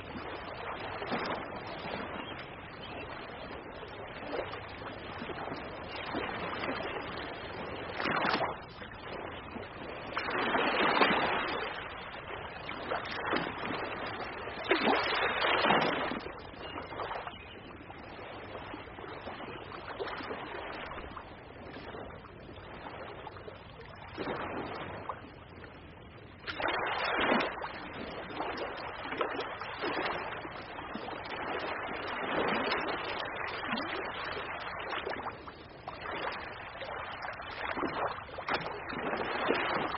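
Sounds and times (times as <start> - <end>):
ocean waves breaking: 4.3 - 16.4, 26.5 - 39.9.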